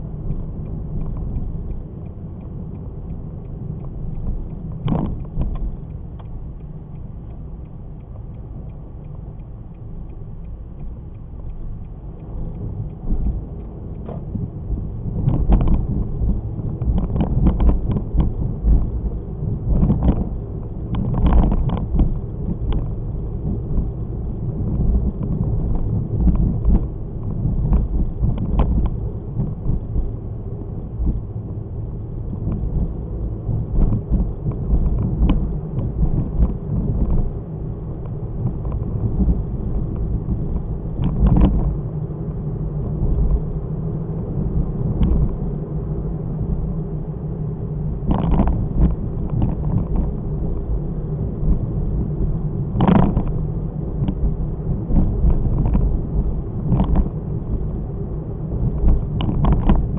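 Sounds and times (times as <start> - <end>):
car engine and road noise: 0.0 - 59.9.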